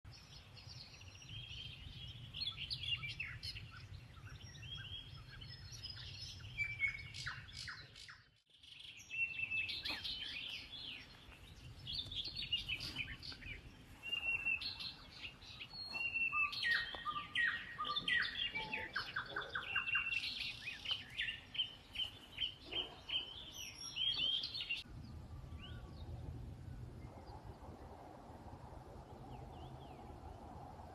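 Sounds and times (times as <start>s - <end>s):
songbirds chirping: 0.1s - 30.9s
low steady rumble: 24.8s - 30.9s.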